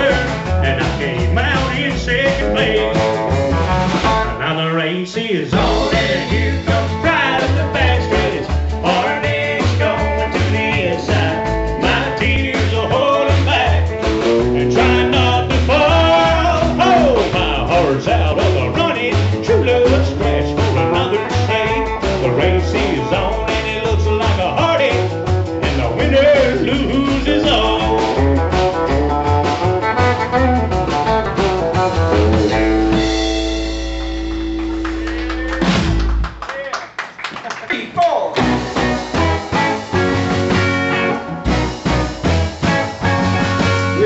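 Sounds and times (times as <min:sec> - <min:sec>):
country band playing live: 0:00.0 - 0:36.4, 0:38.4 - 0:44.0
lead guitar bending notes: 0:13.1 - 0:24.2, 0:24.9 - 0:36.2, 0:38.4 - 0:44.0.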